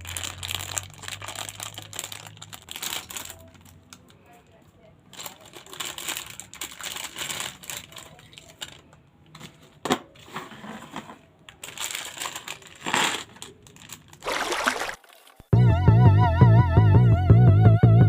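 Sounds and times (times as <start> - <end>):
packaging rustling and clicking: 5.2 - 15.4.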